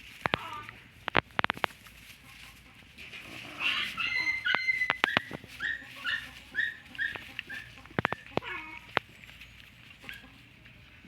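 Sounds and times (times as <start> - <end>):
sharp clicks: 1.0 - 1.8
dog whimpering: 3.6 - 9.0.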